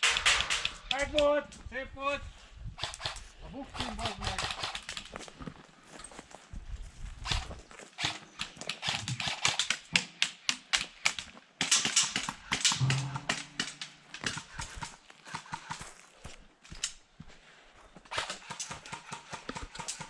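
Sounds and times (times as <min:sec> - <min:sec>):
footsteps on dry ground: 0:05.0 - 0:08.0, 0:14.6 - 0:18.1.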